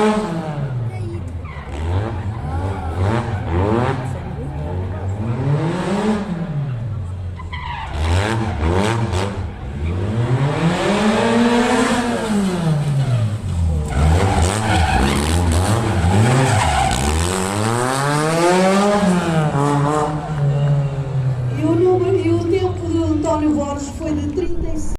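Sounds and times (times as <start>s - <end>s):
car engine revving hard: 1.6s - 6.9s, 7.8s - 20.8s.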